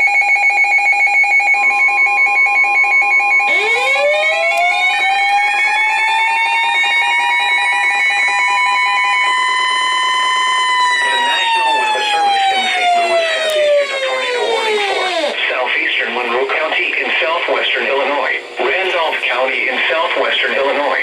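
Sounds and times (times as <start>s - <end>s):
pulsing electronic alarm beeps: 0.0s - 15.4s
tornado warning siren wailing: 0.0s - 15.4s.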